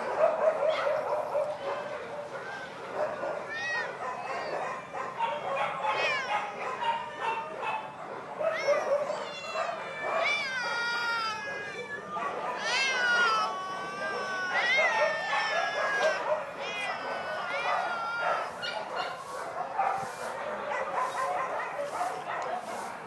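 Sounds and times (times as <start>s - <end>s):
pets crying: 8.6s - 19.2s.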